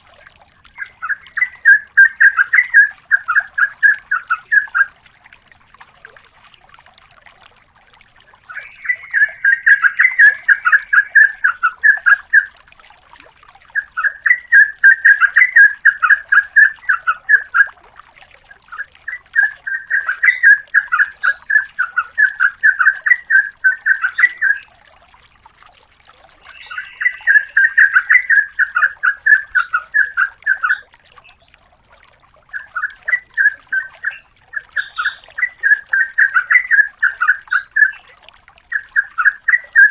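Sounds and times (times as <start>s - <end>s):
bird chattering song: 0.7s - 4.9s, 8.5s - 12.5s, 13.8s - 17.7s, 18.7s - 24.7s, 26.4s - 30.8s, 32.2s - 38.1s.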